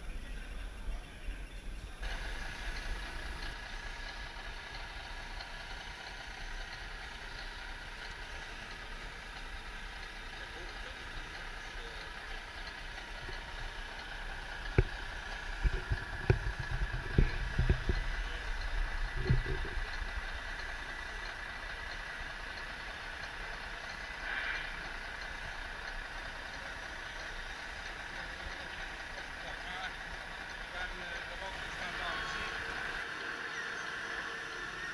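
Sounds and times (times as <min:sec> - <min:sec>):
model truck engine hum: 0:00.0 - 0:34.9
sharp knocks and low thumps: 0:14.7 - 0:18.2.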